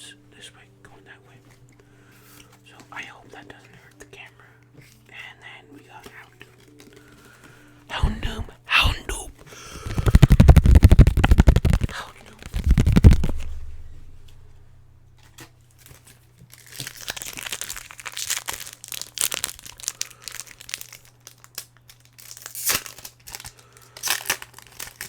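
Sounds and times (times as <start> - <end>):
foil wrapper crinkling and tearing: 9.7 - 14.0, 15.8 - 25.0.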